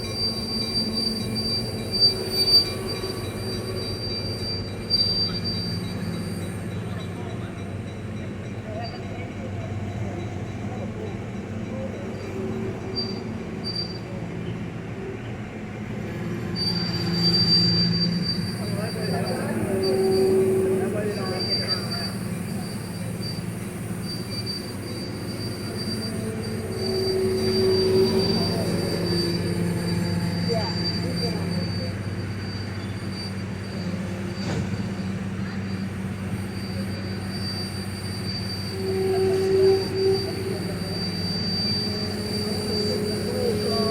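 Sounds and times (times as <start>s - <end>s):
high steel wheel squeal: 0.0s - 43.9s
train rumbling: 0.0s - 43.9s
thin high whine: 16.7s - 43.9s.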